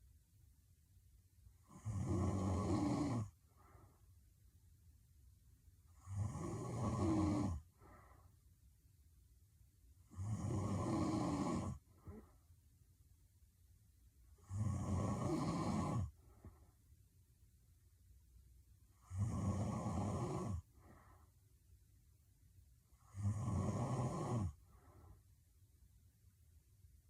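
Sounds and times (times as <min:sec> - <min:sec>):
woman snoring: 0:01.6 - 0:03.4, 0:06.0 - 0:07.6, 0:10.1 - 0:12.2, 0:14.4 - 0:16.2, 0:19.0 - 0:20.7, 0:23.0 - 0:24.6
faint breath: 0:03.4 - 0:04.3, 0:07.6 - 0:08.5, 0:11.8 - 0:12.6, 0:16.1 - 0:17.0, 0:20.6 - 0:21.6, 0:24.5 - 0:25.4.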